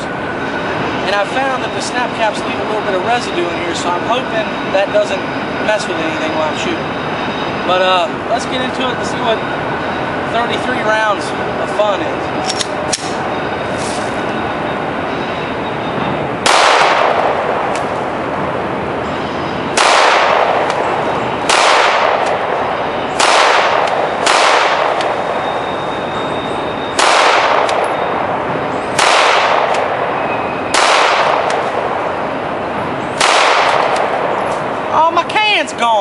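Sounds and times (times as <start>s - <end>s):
pistol shots with echo: 16.4s - 17.7s, 19.7s - 25.5s, 27.0s - 28.3s, 28.9s - 32.1s, 33.2s - 34.6s.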